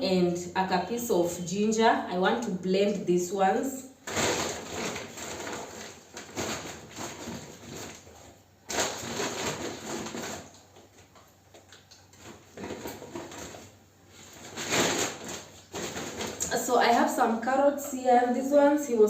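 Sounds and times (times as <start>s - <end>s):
groceries rustling: 4.0s - 18.9s.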